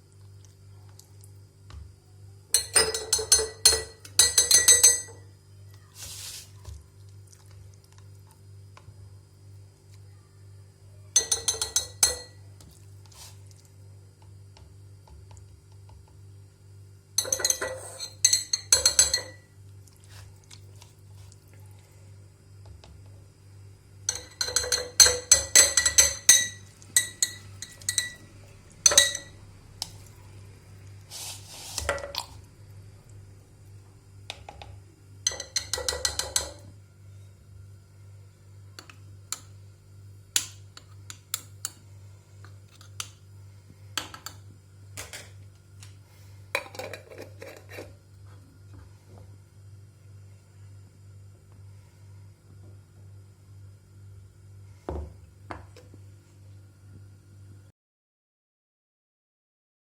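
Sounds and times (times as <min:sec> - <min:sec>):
steady low hum: 0:00.0 - 0:57.7
spoon clinking against glass: 0:02.6 - 0:05.2, 0:11.2 - 0:12.4, 0:17.2 - 0:19.4, 0:24.1 - 0:28.3, 0:28.9 - 0:29.4, 0:35.2 - 0:36.6.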